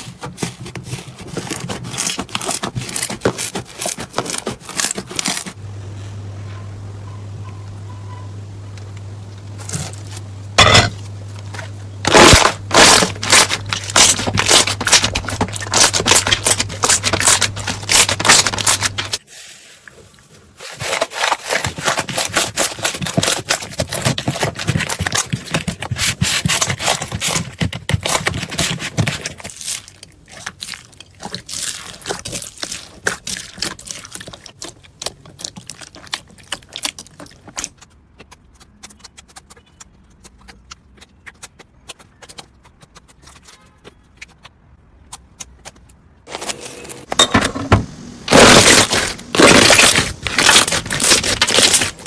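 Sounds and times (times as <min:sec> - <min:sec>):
slime crackling and popping: 0:12.1 - 0:19.2, 0:21.1 - 0:44.4, 0:48.3 - 0:52.0.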